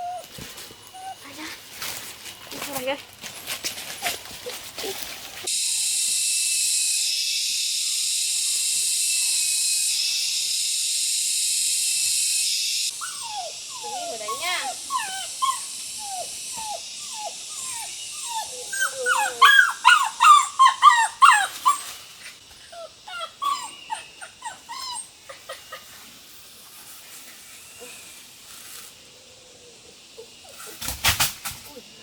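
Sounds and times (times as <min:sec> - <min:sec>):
dog whimpering and yelping: 0:00.0 - 0:00.3, 0:00.9 - 0:01.5, 0:12.9 - 0:22.0, 0:22.7 - 0:25.9.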